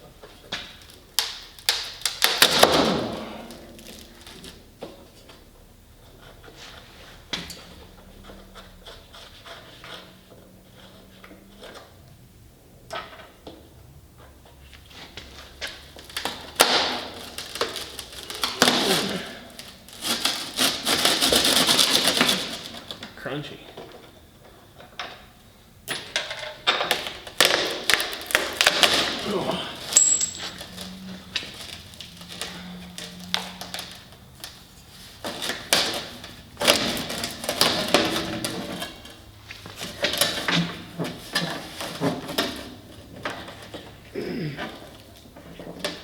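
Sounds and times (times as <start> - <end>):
crunchy scraping rattle: 15.4 - 23.1, 26.6 - 44.1
metal parts clattering: 27.9 - 31.9.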